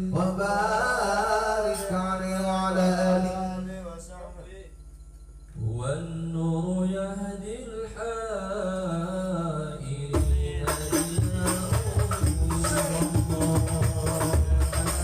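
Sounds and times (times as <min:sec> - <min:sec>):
man singing: 0:00.0 - 0:04.1, 0:05.6 - 0:15.0
frame drums: 0:10.1 - 0:15.0.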